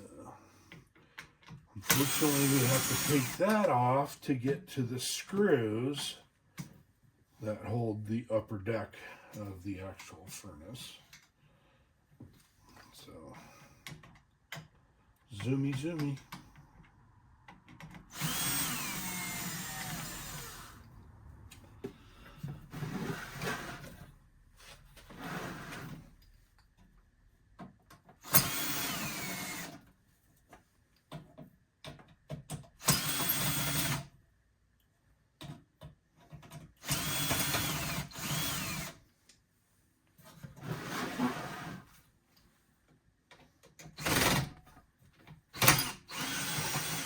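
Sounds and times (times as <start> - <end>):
power drill whining: 1.8 - 3.7, 18.1 - 20.9, 22.7 - 24.0, 28.2 - 29.8, 32.8 - 34.1, 36.8 - 39.0, 45.6 - 47.0.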